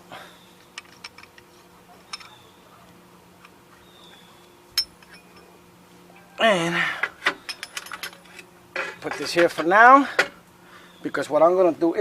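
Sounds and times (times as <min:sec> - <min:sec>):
light metal clinks: 0:04.7 - 0:05.6, 0:07.3 - 0:09.6.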